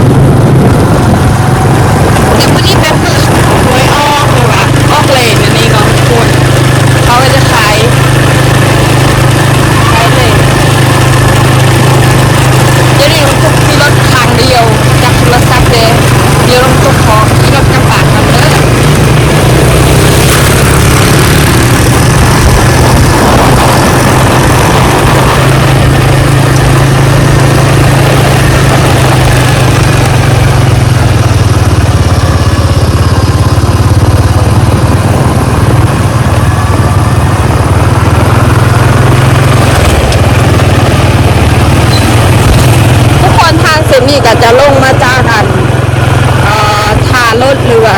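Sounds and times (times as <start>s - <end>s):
loud rushing noise: 0.0s - 5.0s, 8.4s - 31.9s
vehicle engine running: 0.0s - 47.9s.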